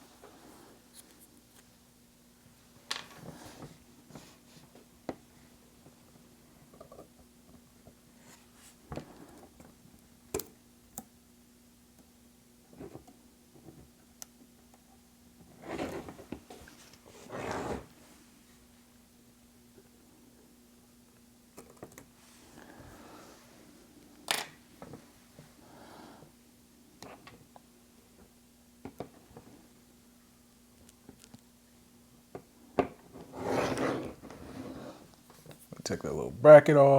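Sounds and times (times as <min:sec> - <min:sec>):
faint steady hum: 0:00.0 - 0:36.9
soft scraping: 0:33.3 - 0:35.8.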